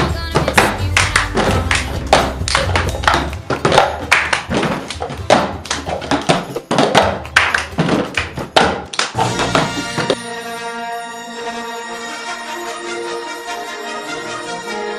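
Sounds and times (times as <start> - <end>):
hand claps: 0.4 - 10.2.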